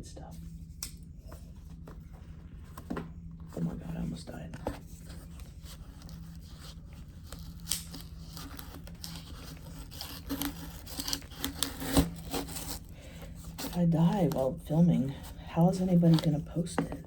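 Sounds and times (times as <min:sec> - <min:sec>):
packing material crinkling: 0:05.0 - 0:17.0
tape and paper tearing: 0:05.9 - 0:12.9.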